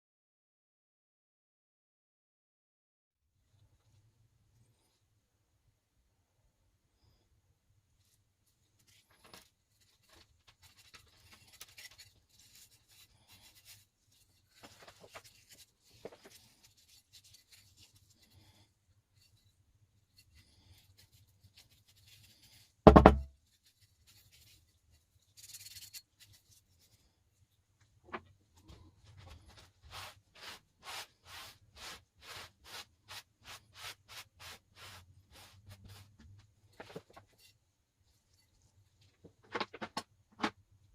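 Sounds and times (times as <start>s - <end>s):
faint scratching and rubbing: 7.9s - 39.4s
small knocks: 22.9s - 23.3s
wire brush scrubbing metal: 29.9s - 36.1s.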